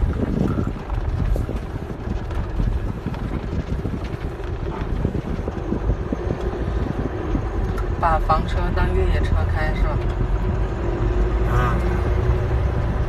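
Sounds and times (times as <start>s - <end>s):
knocks and rattles: 0.0s - 8.0s
engine and tyres rumbling: 0.0s - 13.0s.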